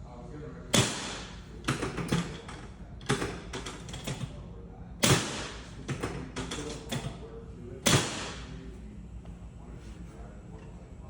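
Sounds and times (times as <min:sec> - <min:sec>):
drop table section banging: 0:05.0 - 0:07.2, 0:07.8 - 0:08.5.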